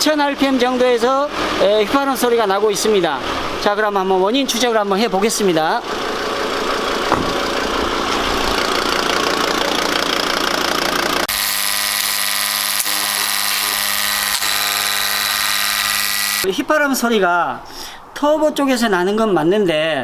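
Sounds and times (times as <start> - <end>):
car engine running: 4.9 - 16.5.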